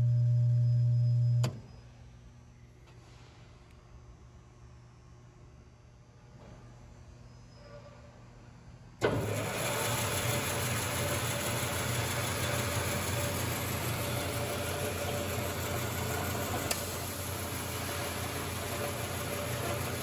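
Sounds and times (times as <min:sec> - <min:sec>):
bandsaw motor humming and whirring: 0:09.0 - 0:20.0.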